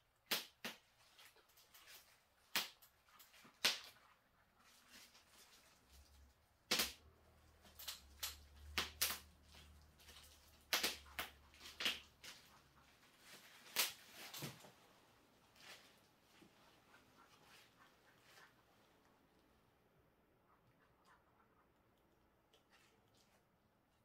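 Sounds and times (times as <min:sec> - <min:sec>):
faint low hum: 0:00.8 - 0:24.0.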